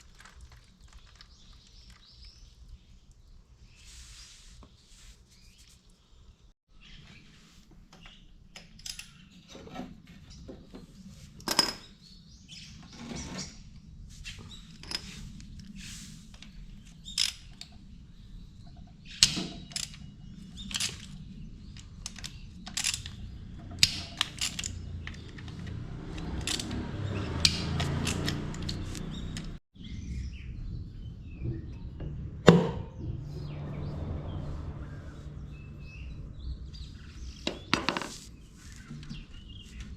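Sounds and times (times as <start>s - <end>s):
metal tools clinking on engine parts: 19.2s - 29.6s.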